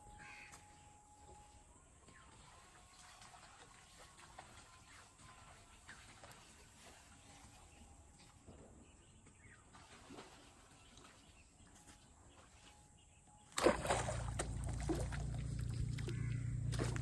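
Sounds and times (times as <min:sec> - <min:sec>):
water splashing and sloshing: 0:00.1 - 0:17.0
steady low rumble: 0:14.0 - 0:17.0.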